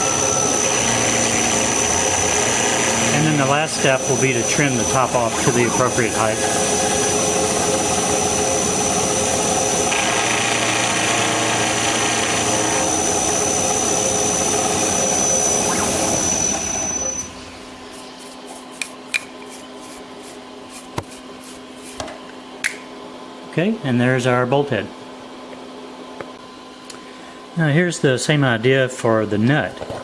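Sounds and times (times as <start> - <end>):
milling machine whine: 0.0 - 18.2.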